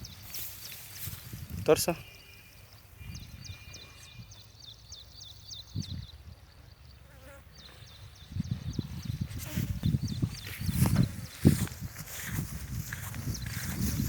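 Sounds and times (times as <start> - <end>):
faint low thuds: 8.4 - 14.0.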